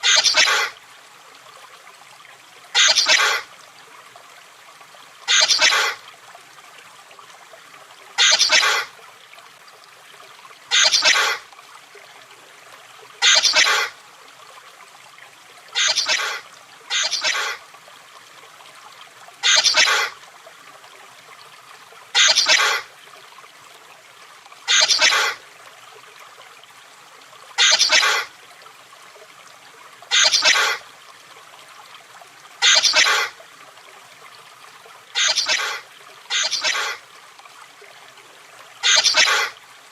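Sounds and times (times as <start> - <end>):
chameleon hissing: 15.8 - 17.6, 35.2 - 37.0, 38.8 - 39.5.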